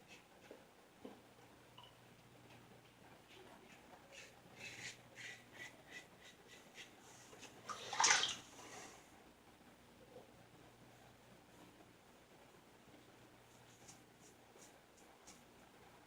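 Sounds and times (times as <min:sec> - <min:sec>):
water splashing at a sink: 0:07.7 - 0:08.5.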